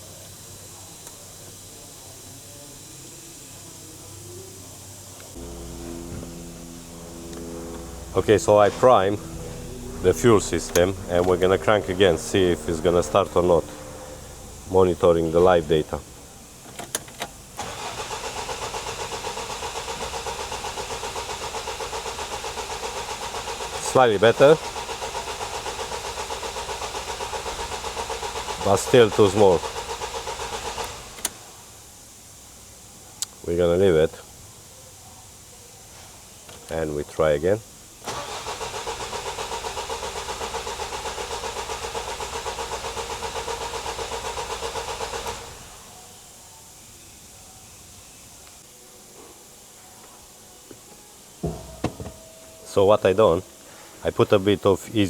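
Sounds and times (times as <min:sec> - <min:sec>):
starter motor cranking engine: 0:00.7 - 0:31.6, 0:38.0 - 0:45.9.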